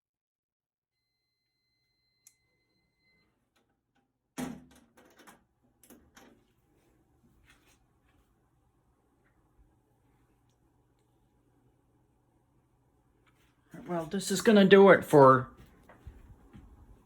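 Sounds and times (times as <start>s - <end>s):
faint steady tone: 1.0s - 3.7s.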